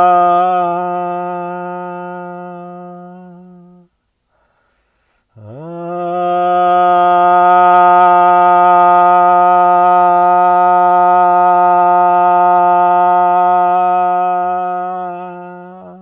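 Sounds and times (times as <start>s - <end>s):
man chanting low note: 5.4s - 16.0s.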